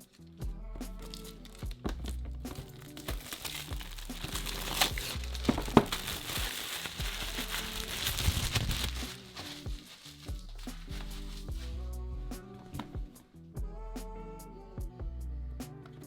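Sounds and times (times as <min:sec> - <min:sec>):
background music: 0:00.0 - 0:16.0
packaging crinkling: 0:01.1 - 0:11.6.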